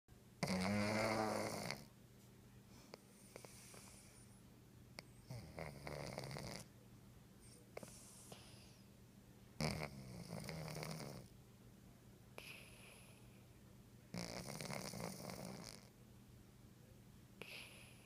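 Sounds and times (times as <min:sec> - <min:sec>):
cat snoring: 0:00.4 - 0:01.9, 0:05.2 - 0:06.7, 0:09.6 - 0:11.3, 0:12.4 - 0:13.2, 0:14.1 - 0:15.9, 0:17.4 - 0:18.0
cat breathing softly: 0:02.7 - 0:04.5, 0:07.4 - 0:08.9, 0:17.4 - 0:18.0.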